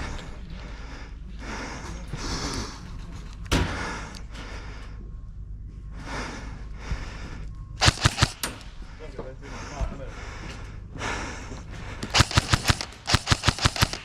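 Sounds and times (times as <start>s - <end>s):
person breathing: 0.0s - 14.0s.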